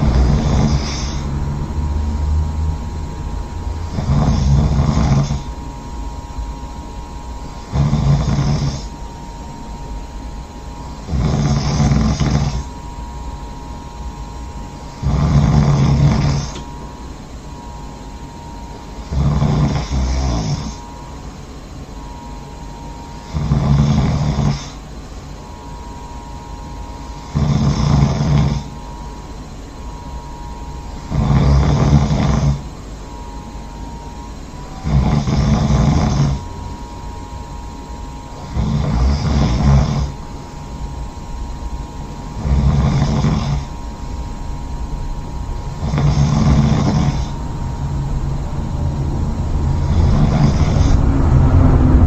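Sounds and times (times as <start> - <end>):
person snoring loudly: 0.0 - 2.8, 3.7 - 5.6, 7.4 - 9.0, 11.0 - 12.8, 14.8 - 16.6, 19.0 - 20.8, 23.2 - 24.8, 27.2 - 28.8, 30.9 - 32.7, 34.7 - 36.5, 38.4 - 40.2, 42.4 - 43.9, 45.7 - 47.8, 48.9 - 52.0.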